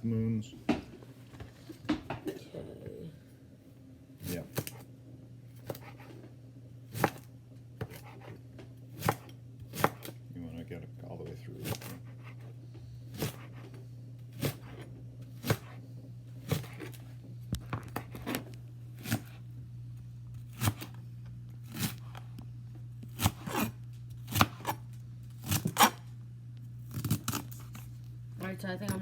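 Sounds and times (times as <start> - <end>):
steady low hum: 0.0 - 29.0
knife cutting on a board: 4.2 - 4.9, 5.6 - 6.2, 6.9 - 10.2, 11.6 - 15.8, 16.4 - 19.4, 20.4 - 21.0, 21.6 - 22.2, 23.0 - 26.1, 26.9 - 27.9.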